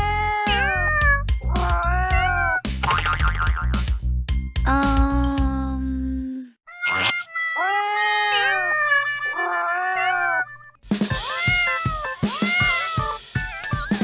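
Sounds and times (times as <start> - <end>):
cat meowing: 0.0 - 2.6, 6.7 - 13.2
bouncy music with a beat: 0.0 - 5.6, 10.9 - 14.0.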